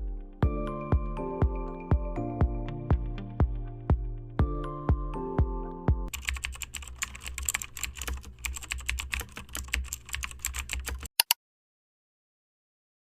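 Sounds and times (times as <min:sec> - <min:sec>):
keyboard typing clicks: 0:06.1 - 0:11.4.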